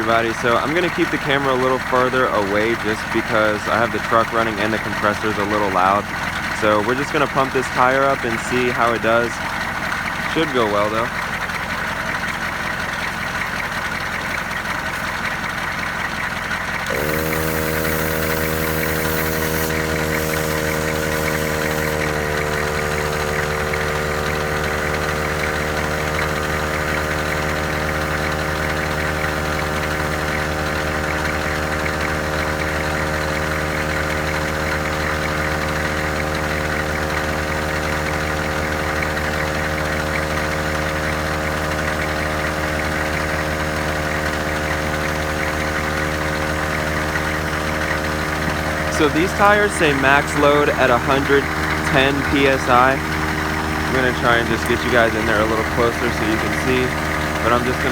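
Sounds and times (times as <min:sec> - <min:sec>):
air compressor motor hum: 0:00.0 - 0:57.9
truck engine idling: 0:00.0 - 0:57.9
high hiss: 0:17.0 - 0:22.4.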